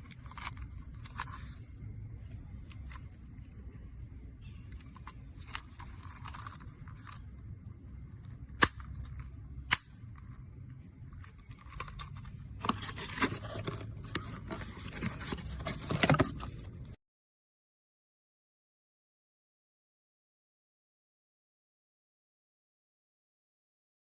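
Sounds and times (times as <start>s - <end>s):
packaging rustling and scraping: 0.0s - 1.8s, 4.6s - 7.4s, 11.0s - 17.0s.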